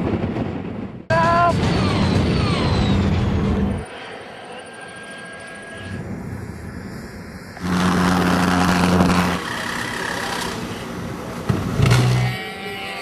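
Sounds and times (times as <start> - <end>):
model airplane motor: 7.6 - 10.8.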